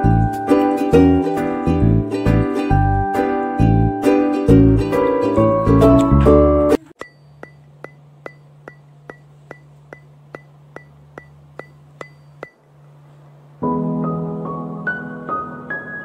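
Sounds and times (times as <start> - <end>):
plucked background music: 0.0 - 6.9
low steady hum: 4.5 - 13.7
sharp ringing ticks: 7.0 - 12.6.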